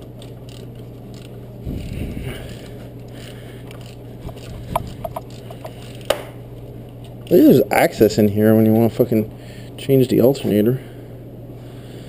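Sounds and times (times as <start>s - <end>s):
mechanical rattling: 0.0s - 6.2s
low hum: 0.0s - 9.8s.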